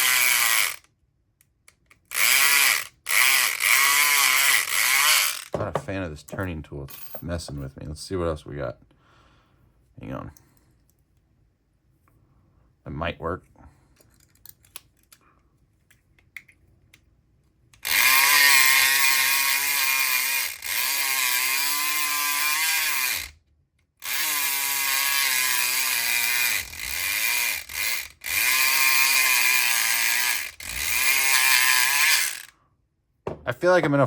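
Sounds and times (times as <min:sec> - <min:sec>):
electric lock pick gun buzzing: 0:00.0 - 0:00.9, 0:02.0 - 0:05.6, 0:17.8 - 0:23.4, 0:24.0 - 0:32.5.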